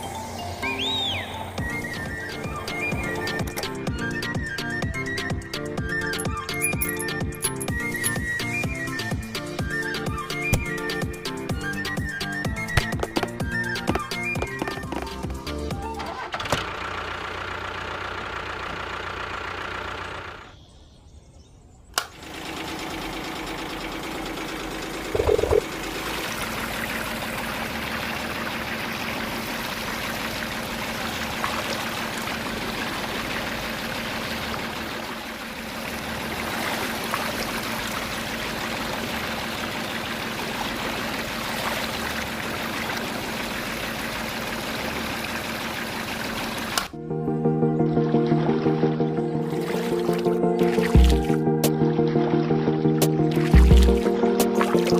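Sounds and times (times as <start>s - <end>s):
click: 21.9s - 22.1s.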